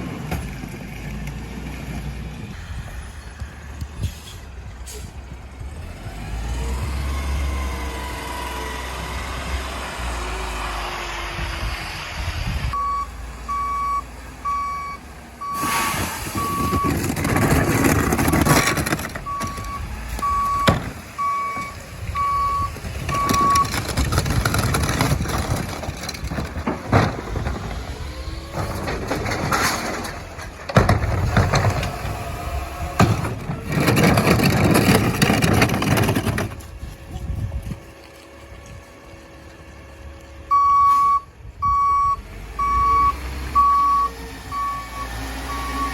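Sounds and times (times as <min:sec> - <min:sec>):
engine and packer surges: 0:00.0 - 0:45.9
backup alarm beeping: 0:12.8 - 0:17.0, 0:19.2 - 0:23.8, 0:40.5 - 0:45.9.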